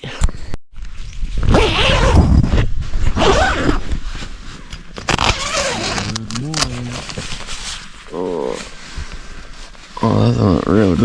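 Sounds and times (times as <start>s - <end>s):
tent zip being pulled: 1.5s - 8.0s.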